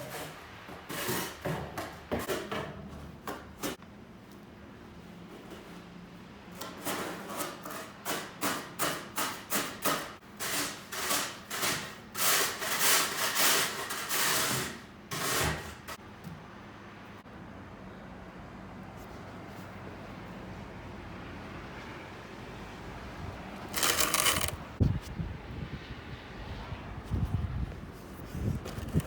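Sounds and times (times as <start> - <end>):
snow scraping: 23.7 - 24.6.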